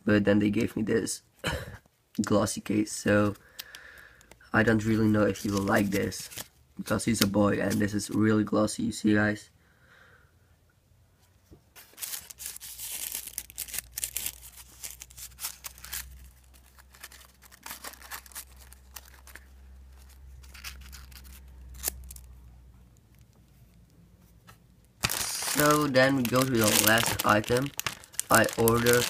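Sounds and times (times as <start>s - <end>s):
plastic packaging crinkling and tearing: 4.8s - 7.8s, 11.8s - 22.3s, 25.0s - 29.0s.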